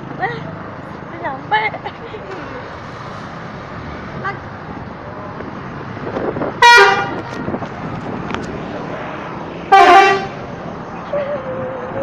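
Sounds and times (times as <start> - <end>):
street noise: 0.0 - 12.0
multi-tone bus horn blast: 6.6 - 7.2, 9.7 - 10.4.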